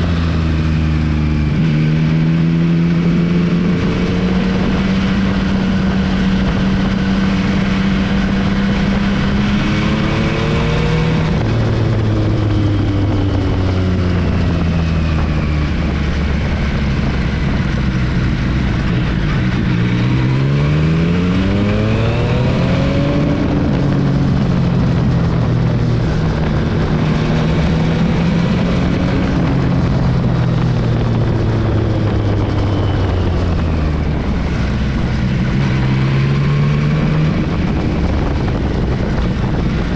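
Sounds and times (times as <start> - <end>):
motorcycle engine shifting gears: 0.0 - 39.9.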